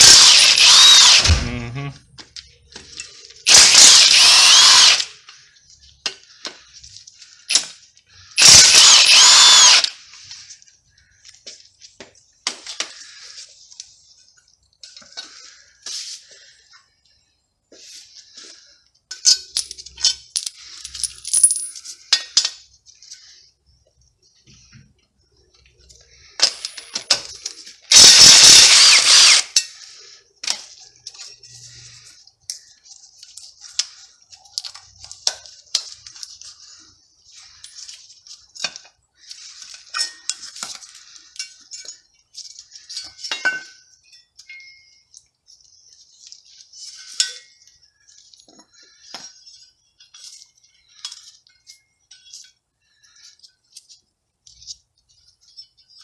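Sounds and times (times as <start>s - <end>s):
metal tools clinking: 19.1s - 22.5s, 26.4s - 29.8s, 39.7s - 45.3s.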